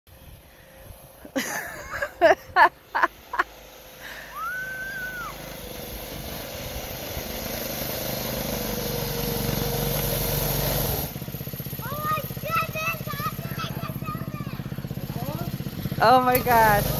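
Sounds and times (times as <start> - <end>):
snowmobile engine approaching: 0.1 - 16.9
high-pitched yells: 4.3 - 5.4.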